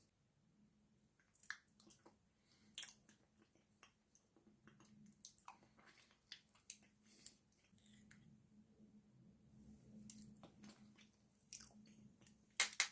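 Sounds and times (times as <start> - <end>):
wet mouth smacks of chewing: 1.2 - 7.8.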